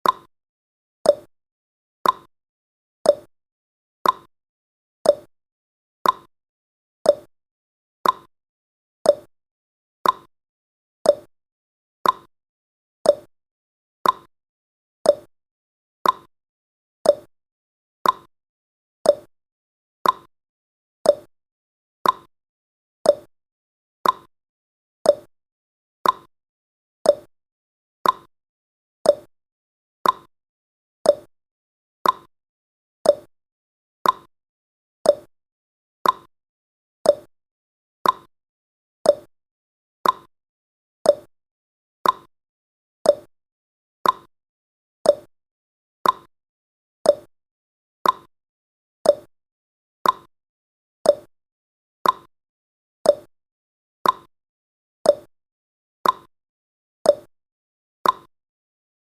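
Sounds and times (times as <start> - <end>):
timer ticking tick-tock: 0.0 - 0.3, 1.0 - 1.3, 2.0 - 2.3, 3.1 - 3.3, 4.0 - 4.3, 5.0 - 5.3, 6.0 - 6.3, 7.0 - 7.3, 8.0 - 8.3, 9.0 - 9.3, 10.0 - 10.3, 11.0 - 11.3, 12.0 - 12.3, 13.0 - 13.3, 14.0 - 14.3, 15.0 - 15.3, 16.0 - 16.3, 17.0 - 17.3, 18.0 - 18.3, 19.0 - 19.3, 20.0 - 20.3, 21.0 - 21.3, 22.0 - 22.3, 23.0 - 23.3, 24.0 - 24.3, 25.0 - 25.3, 26.0 - 26.3, 27.0 - 27.3, 28.0 - 28.3, 29.0 - 29.3, 30.0 - 30.3, 31.0 - 31.3, 32.0 - 32.3, 33.0 - 33.3, 34.0 - 34.3, 35.0 - 35.3, 36.0 - 36.3, 37.0 - 37.3, 38.0 - 38.3, 39.0 - 39.3, 40.0 - 40.3, 41.0 - 41.3, 42.0 - 42.3, 43.0 - 43.3, 44.0 - 44.3, 45.0 - 45.3, 46.0 - 46.3, 47.0 - 47.3, 48.0 - 48.3, 49.0 - 49.3, 50.0 - 50.3, 51.0 - 51.3, 52.0 - 52.3, 53.1 - 53.3, 54.0 - 54.3, 55.1 - 55.3, 56.0 - 56.3, 57.1 - 57.3, 58.0 - 58.3.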